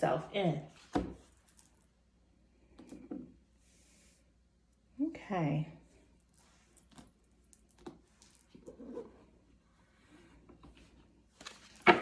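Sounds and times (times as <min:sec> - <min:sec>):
soft rustles: 0:06.0 - 0:11.9.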